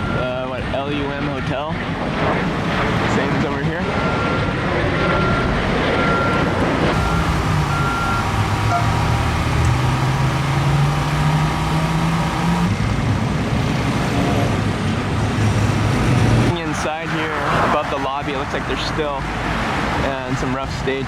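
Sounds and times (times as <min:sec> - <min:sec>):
reversing alarm beeping: 0:00.0 - 0:00.4, 0:03.9 - 0:10.8
street traffic: 0:00.0 - 0:21.0
vehicle engine running: 0:06.9 - 0:20.0.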